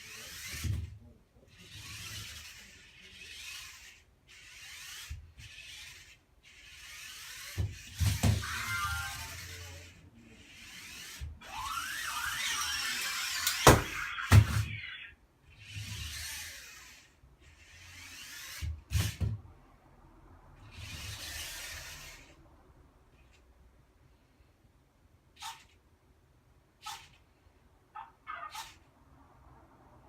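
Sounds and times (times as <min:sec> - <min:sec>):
drone propellers whirring: 0:06.7 - 0:15.0.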